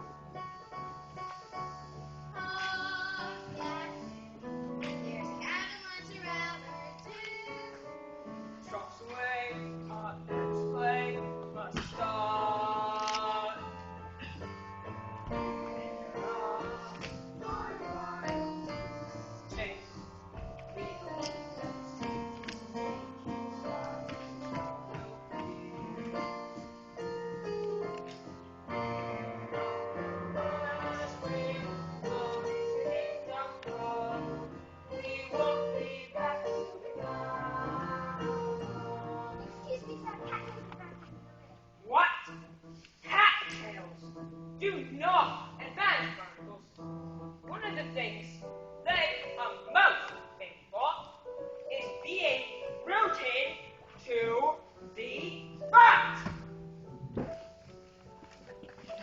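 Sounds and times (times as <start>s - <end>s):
cast singing a musical number: 15.8s - 18.8s, 30.4s - 40.0s.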